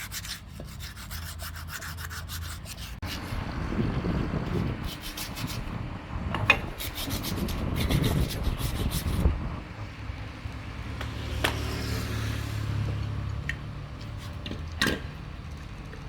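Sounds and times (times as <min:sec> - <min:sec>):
hand sanding strokes: 0:00.0 - 0:03.4, 0:04.5 - 0:05.8, 0:06.6 - 0:09.4.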